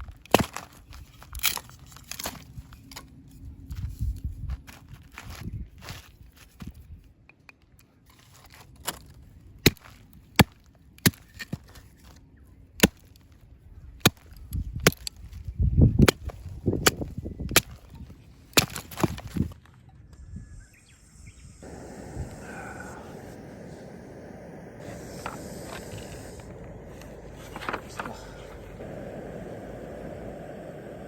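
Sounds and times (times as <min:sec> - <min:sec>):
steady hiss: 0:20.8 - 0:31.0.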